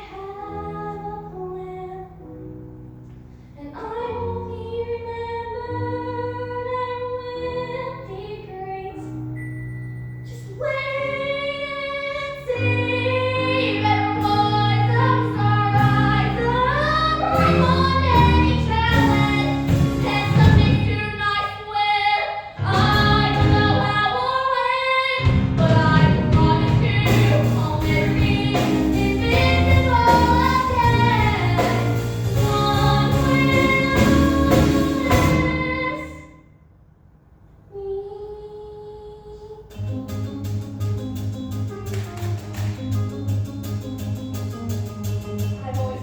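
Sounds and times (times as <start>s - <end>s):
girl singing: 3.6s - 9.2s, 10.3s - 36.4s, 37.7s - 40.2s
low instrumental accompaniment: 39.8s - 46.0s.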